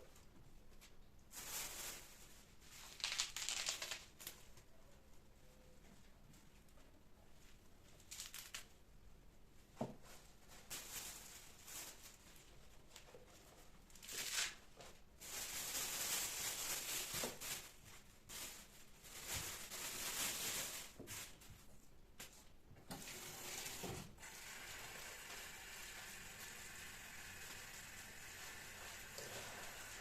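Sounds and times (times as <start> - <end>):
grocery bags rustling: 1.3 - 4.4, 10.1 - 21.7.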